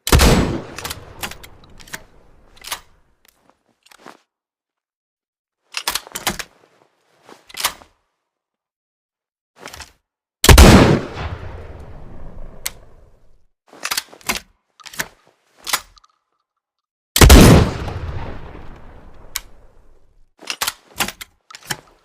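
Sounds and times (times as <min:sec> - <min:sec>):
metallic gun action clicks: 0:00.6 - 0:03.0, 0:19.2 - 0:19.6
shotgun shots with echo: 0:10.5 - 0:11.6, 0:17.2 - 0:18.5.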